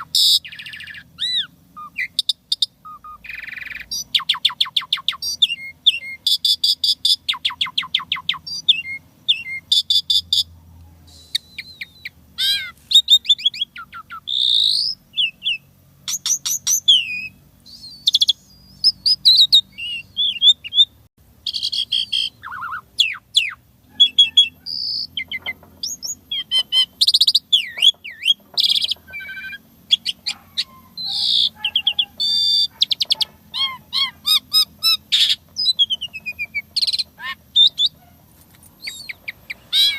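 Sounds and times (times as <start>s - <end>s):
starling singing: 0.0s - 39.9s.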